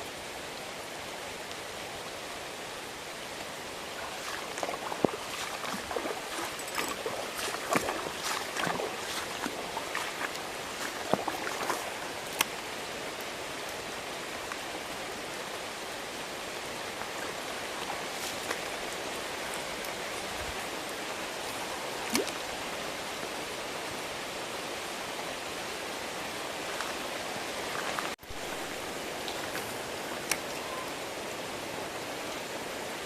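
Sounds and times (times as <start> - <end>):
stream running: 0.0 - 33.0
sharp ticks and splashes: 3.4 - 15.2, 16.0 - 23.3, 26.6 - 30.6.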